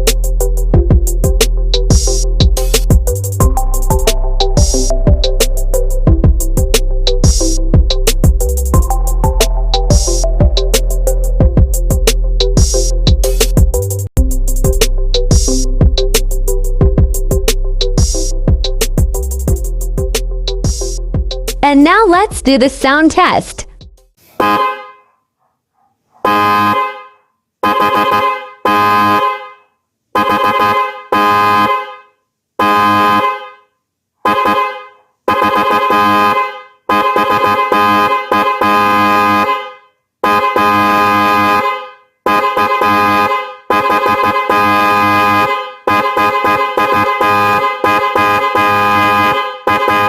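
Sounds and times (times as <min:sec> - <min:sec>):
car horn honking: 0:24.3 - 0:25.2, 0:26.2 - 0:50.0.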